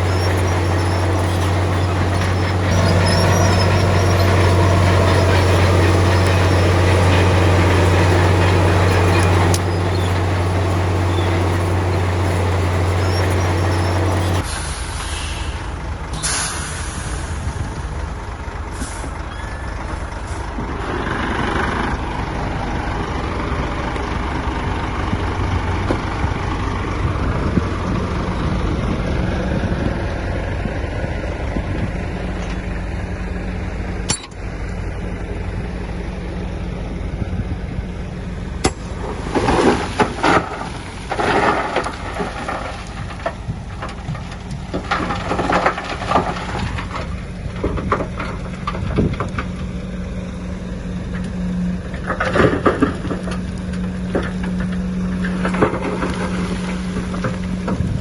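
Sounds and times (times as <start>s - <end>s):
loud clanking and rattling: 0.0s - 14.5s
heavy diesel machinery running: 0.0s - 58.0s.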